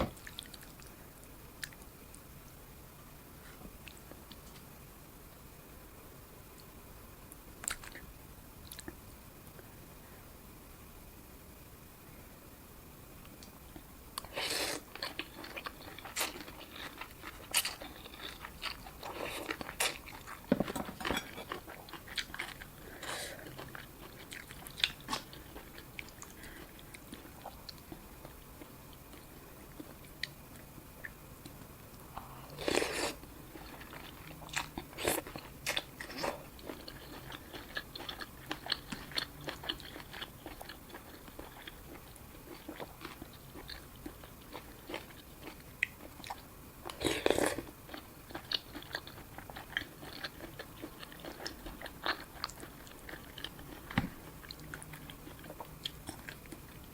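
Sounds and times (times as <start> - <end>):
person chewing and crunching food: 13.8 - 56.9.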